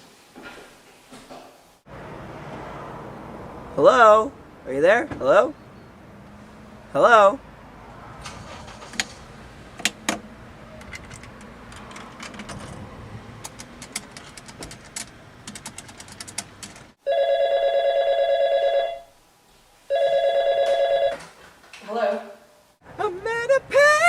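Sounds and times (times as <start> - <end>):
telephone ringing: 17.0 - 19.1, 19.9 - 21.3.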